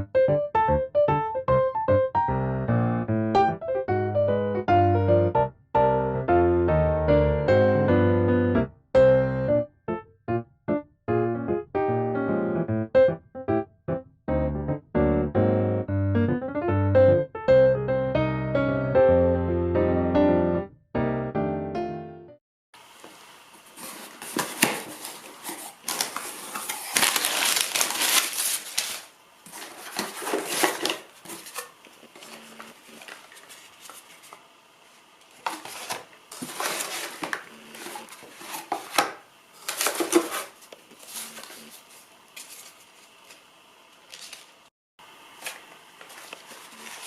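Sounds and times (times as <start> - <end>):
packaging rustling and crinkling: 23.0 - 44.7, 45.4 - 47.0.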